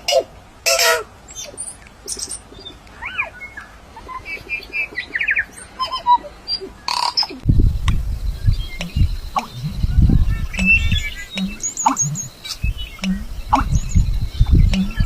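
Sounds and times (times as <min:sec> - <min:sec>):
birds chirping and whistling: 0:01.3 - 0:15.0
low thuds: 0:07.4 - 0:15.0.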